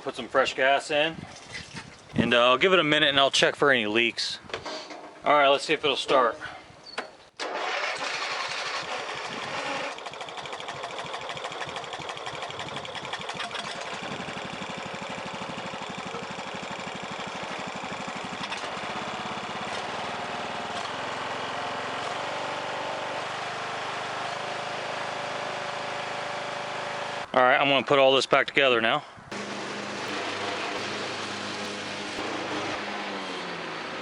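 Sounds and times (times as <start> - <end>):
riding mower engine running: 7.4 - 27.3, 29.3 - 34.0.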